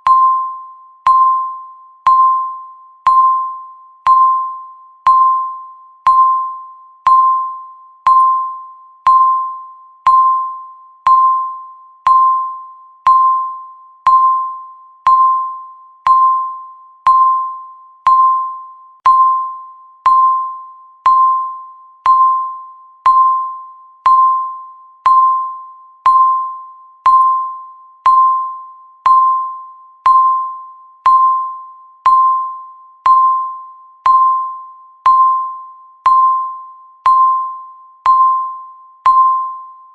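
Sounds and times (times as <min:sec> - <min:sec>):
countdown timer beeping: 0:00.0 - 0:39.9.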